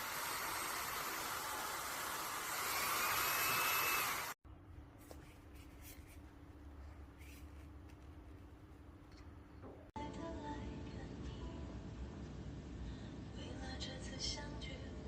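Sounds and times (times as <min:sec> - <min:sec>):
handheld vacuum cleaner running: 0:00.0 - 0:04.4.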